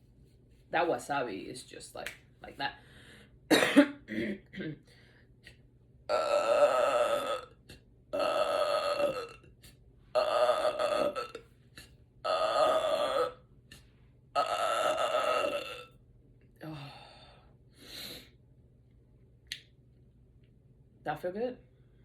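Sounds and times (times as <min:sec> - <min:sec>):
woman belching loudly: 0:06.1 - 0:09.5, 0:10.2 - 0:11.4, 0:12.3 - 0:13.4, 0:14.4 - 0:15.9.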